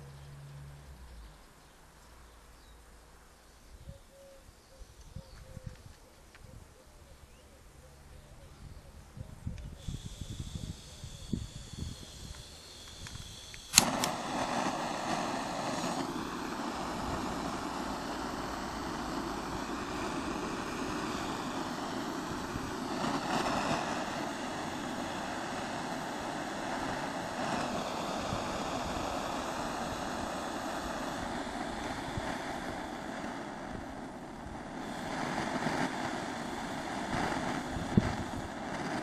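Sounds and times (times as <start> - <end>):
gas torch ignition click: 9.5 - 39.0
torch flame hissing: 9.7 - 39.0.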